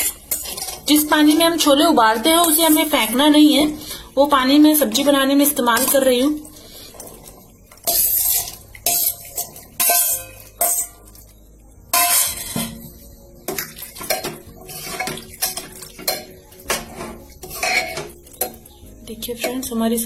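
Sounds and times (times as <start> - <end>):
metal spoon stirring in pot: 0.0 - 19.7
water poured splashing into pot: 2.2 - 11.3, 11.9 - 18.7.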